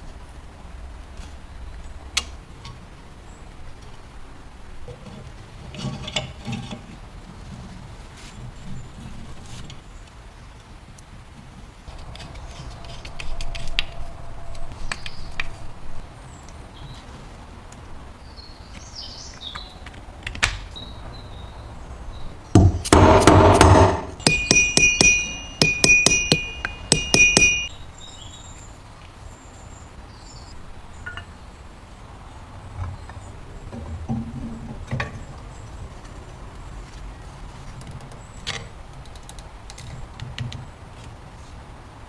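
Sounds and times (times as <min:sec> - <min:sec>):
metal scraping: 0:22.6 - 0:27.7
ringing metallic clinks: 0:23.7 - 0:27.7.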